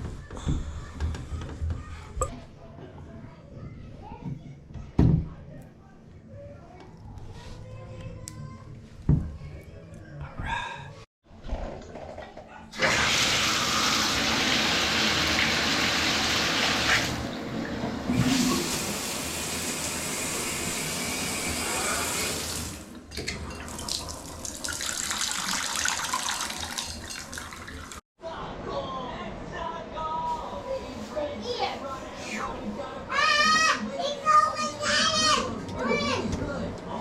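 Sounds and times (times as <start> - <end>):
shower water running: 12.7 - 28.0.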